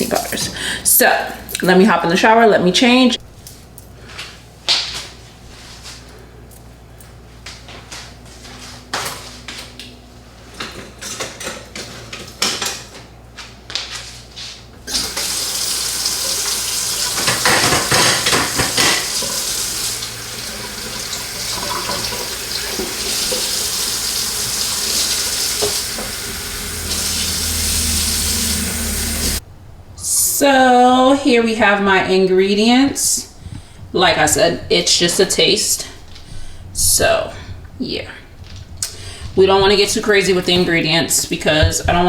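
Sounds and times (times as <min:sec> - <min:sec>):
water running: 0:00.0 - 0:00.7, 0:14.8 - 0:29.4, 0:39.2 - 0:42.0.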